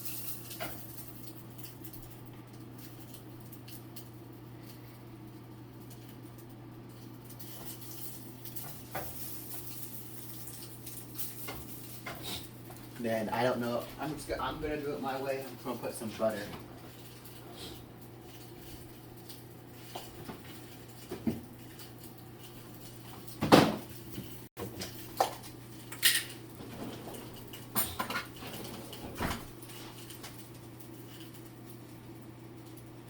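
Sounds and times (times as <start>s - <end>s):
metal utensils clattering: 16.2s - 31.8s.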